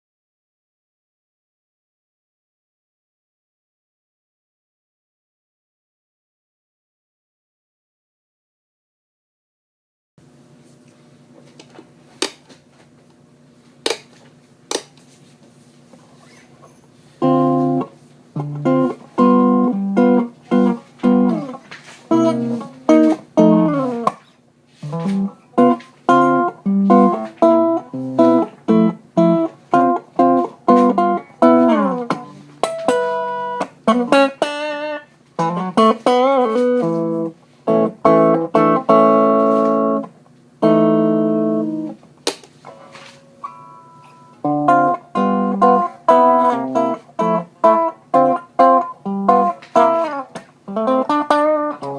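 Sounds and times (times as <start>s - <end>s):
electric guitar chords and phrases: 17.2s - 24.2s, 24.8s - 42.0s, 43.4s - 51.9s.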